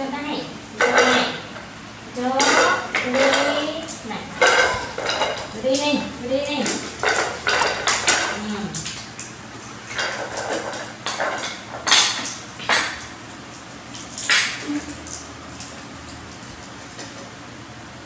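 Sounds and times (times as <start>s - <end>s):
dishes and utensils clattering: 4.4s - 5.6s, 6.7s - 9.1s, 9.9s - 13.1s.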